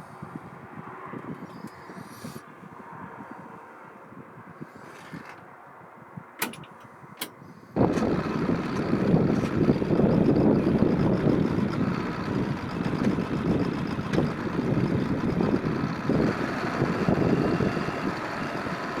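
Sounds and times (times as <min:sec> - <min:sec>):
backhoe loader engine rumble: 0:04.4 - 0:19.0.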